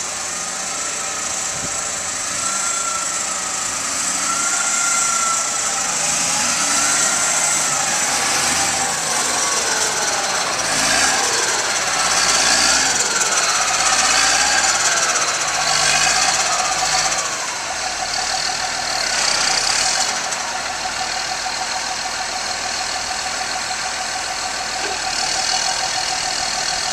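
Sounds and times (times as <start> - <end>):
diesel engine revving: 0.0 - 26.9.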